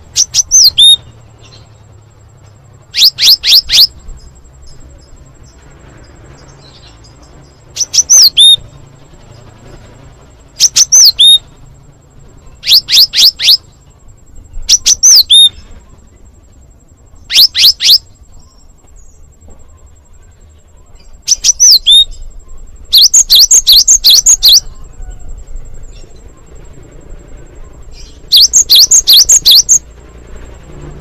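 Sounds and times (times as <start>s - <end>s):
great tit calling: 0.0s - 1.8s, 2.9s - 5.6s, 6.4s - 8.7s, 10.6s - 11.6s, 14.5s - 15.8s, 20.9s - 25.0s, 27.6s - 29.9s.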